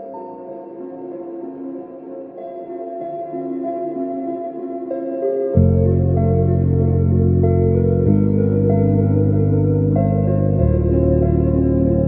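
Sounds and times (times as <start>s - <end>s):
slow ambient bell-like music: 0.0s - 12.0s.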